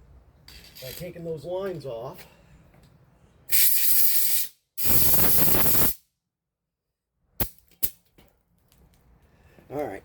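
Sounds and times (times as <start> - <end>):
pressurised spray hissing: 3.5 - 6.0.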